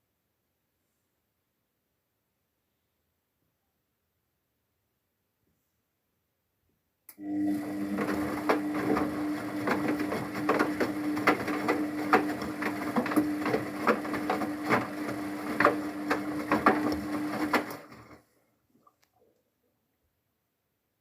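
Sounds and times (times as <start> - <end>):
washing machine motor hum: 7.1 - 18.2.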